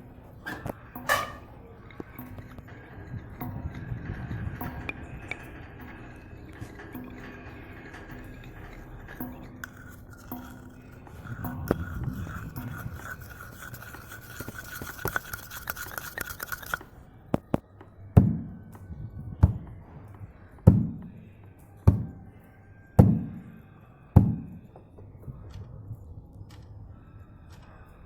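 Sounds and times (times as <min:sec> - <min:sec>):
scraping rubbing sound: 0:00.0 - 0:17.0
heavy booming knocks: 0:18.2 - 0:21.3, 0:23.0 - 0:23.6.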